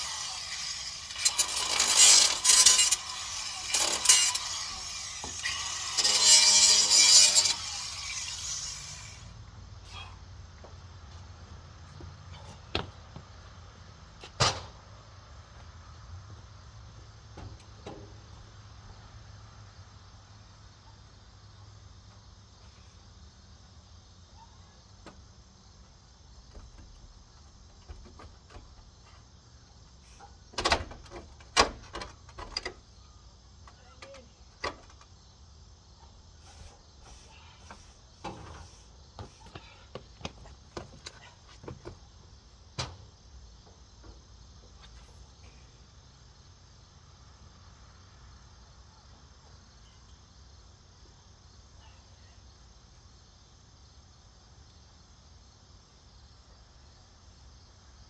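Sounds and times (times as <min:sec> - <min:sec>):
rasping power tool: 0:00.0 - 0:09.3.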